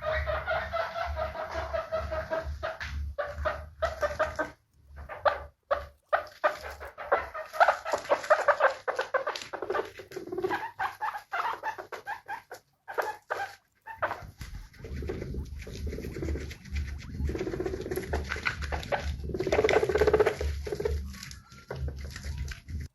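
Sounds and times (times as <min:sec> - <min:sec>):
guinea pig squeaking: 0:00.0 - 0:22.9.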